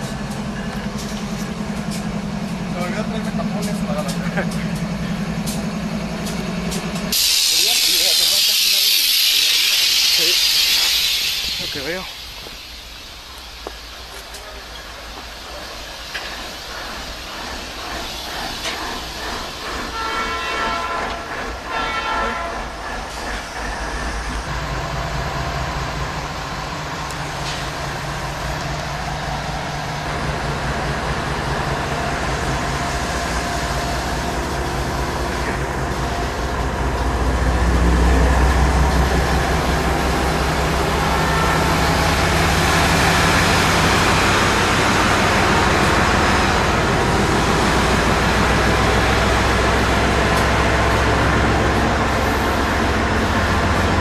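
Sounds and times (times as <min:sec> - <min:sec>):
diesel engine drone: 0:00.0 - 0:09.4, 0:24.3 - 0:54.0
locomotive horn blasts: 0:19.9 - 0:22.6.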